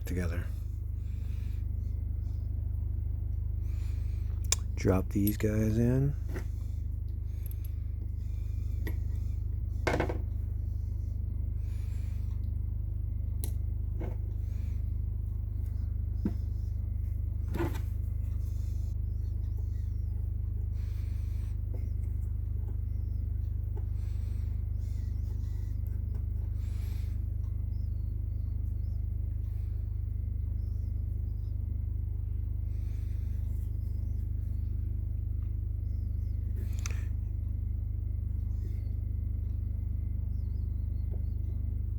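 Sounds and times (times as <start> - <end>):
steady low hum: 0.0 - 41.9.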